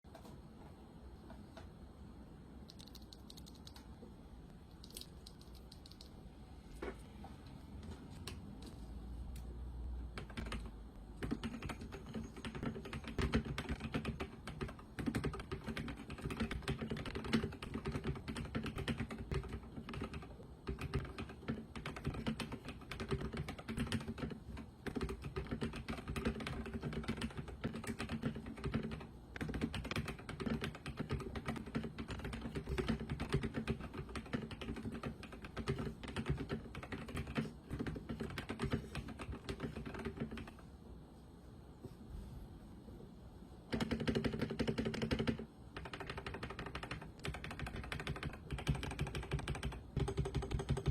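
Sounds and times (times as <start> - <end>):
fast typing on mechanical keyboard: 2.7 - 3.8, 10.1 - 40.6, 43.7 - 50.9.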